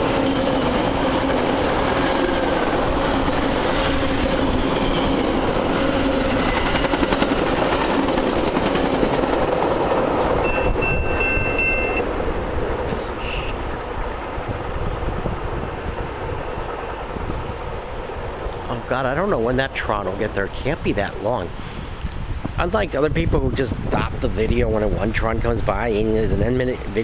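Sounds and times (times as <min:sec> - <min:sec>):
train wheels rumbling on rail: 0:00.0 - 0:27.0
high ringing tone: 0:10.4 - 0:12.2, 0:13.2 - 0:13.6.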